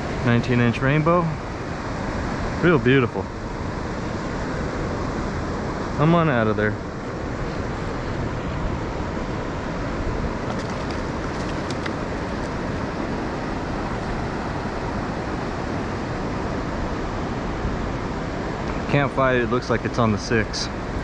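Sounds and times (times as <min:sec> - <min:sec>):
river current rushing: 0:06.8 - 0:15.9.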